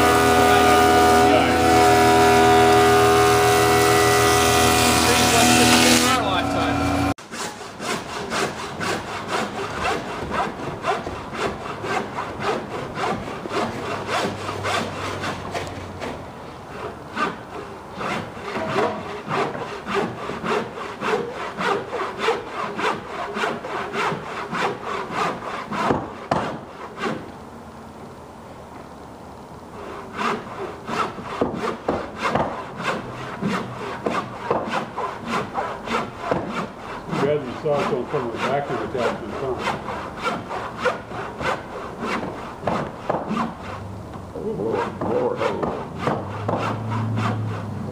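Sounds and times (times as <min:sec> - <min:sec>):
hand saw cutting wood: 0:00.0 - 0:27.4, 0:29.7 - 0:47.9
steady machine sound: 0:02.8 - 0:07.1.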